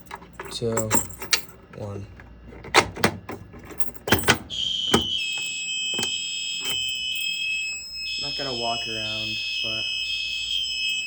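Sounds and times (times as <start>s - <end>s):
fire alarm pull station clacks: 0.0s - 7.5s
high-pitched fire alarm tone: 4.1s - 11.0s
lower alarm tone: 4.1s - 11.0s.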